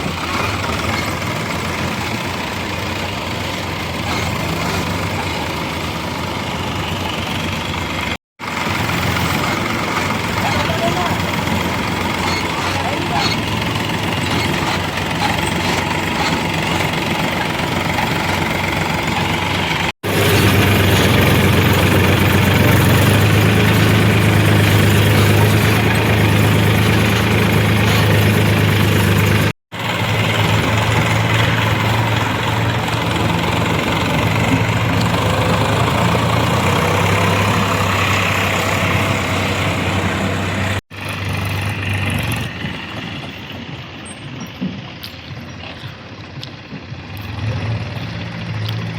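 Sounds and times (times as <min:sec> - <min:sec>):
heavy diesel engine droning: 0:00.0 - 0:48.9.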